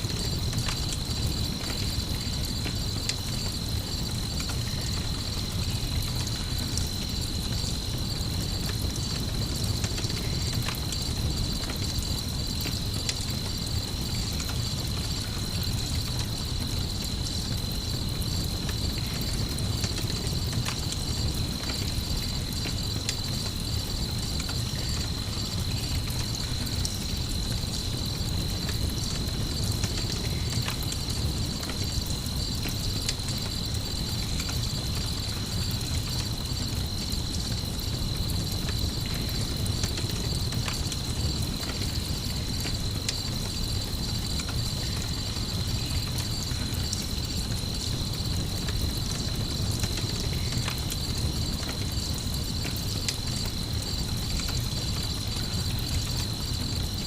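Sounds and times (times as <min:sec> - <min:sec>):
campfire crackles: 0:00.0 - 0:57.0
crickets trilling: 0:00.0 - 0:57.0.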